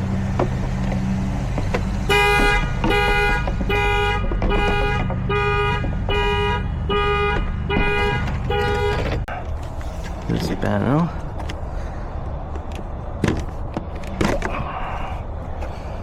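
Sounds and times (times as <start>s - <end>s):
car alarm horn honking: 2.0s - 9.2s.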